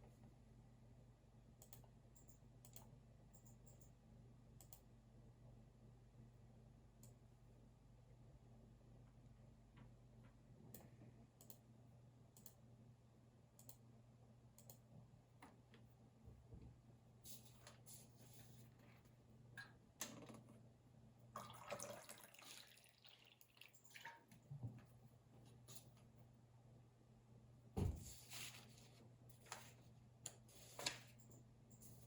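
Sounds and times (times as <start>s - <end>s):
low steady hum: 0.0s - 32.0s
keyboard and mouse clicks: 1.6s - 3.9s.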